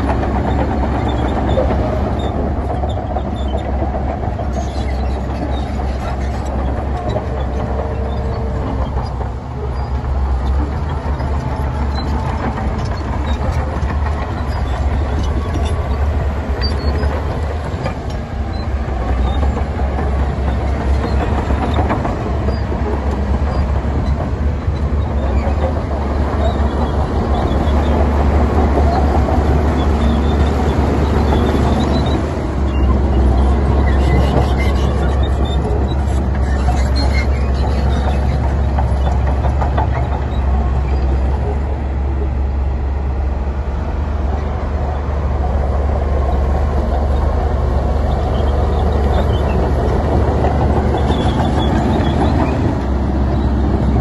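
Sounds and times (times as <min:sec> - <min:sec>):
heavy diesel machinery rumbling: 0:00.0 - 0:54.0.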